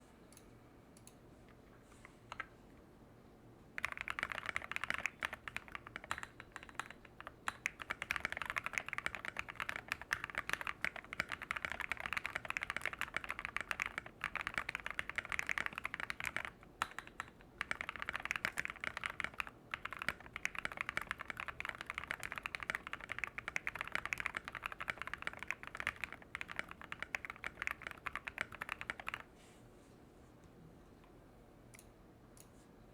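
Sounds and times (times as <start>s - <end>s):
mechanical keyboard typing: 3.8s - 29.3s.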